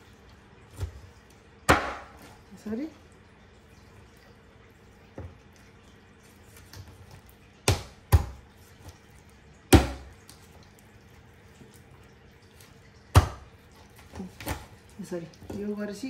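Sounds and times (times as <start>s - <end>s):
knife chopping on cutting board: 1.7s - 2.3s.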